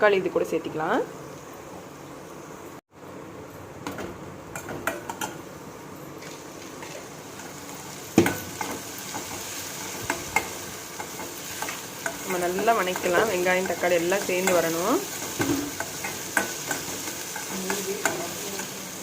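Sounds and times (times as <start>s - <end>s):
vegetables sizzling in oil: 0.0s - 2.8s, 4.3s - 19.0s
spatula scraping and knocking pan: 8.1s - 18.8s.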